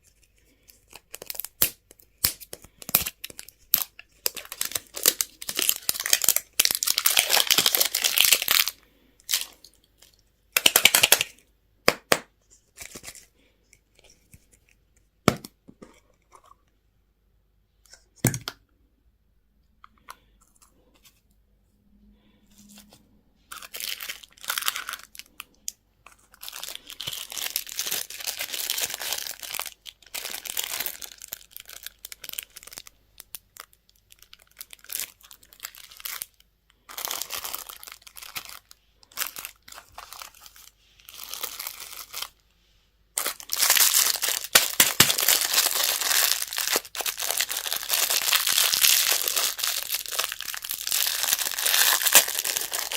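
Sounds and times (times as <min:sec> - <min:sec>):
plastic packaging tearing and crinkling: 0:00.2 - 0:09.6, 0:10.6 - 0:11.4, 0:26.4 - 0:42.4, 0:43.2 - 0:52.9.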